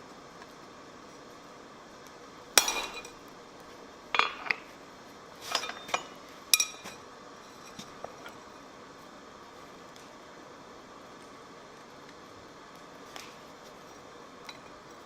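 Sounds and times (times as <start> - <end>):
steel clinking on steel: 2.6 - 3.2, 5.5 - 6.9.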